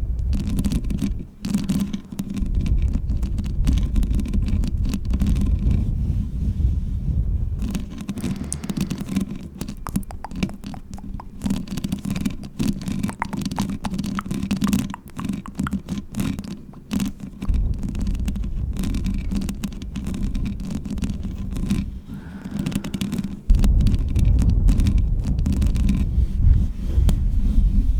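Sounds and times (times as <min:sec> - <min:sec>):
fingernails scratching a microphone: 0:00.2 - 0:27.9
low rumble: 0:17.5 - 0:27.9.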